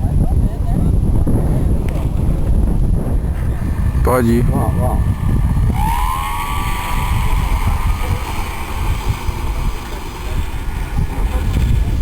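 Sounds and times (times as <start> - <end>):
wind buffeting microphone: 0.0 - 12.0
model airplane motor whining: 3.1 - 12.0.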